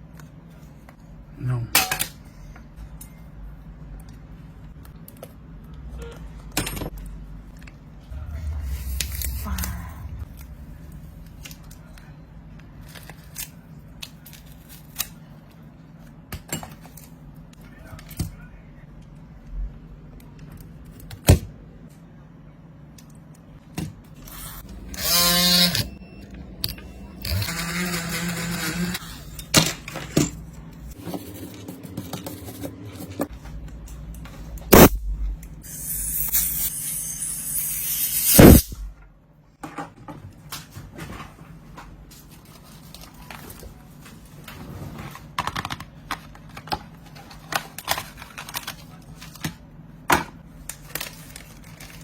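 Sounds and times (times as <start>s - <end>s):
scraping or hissing noise: 8.1s - 11.4s.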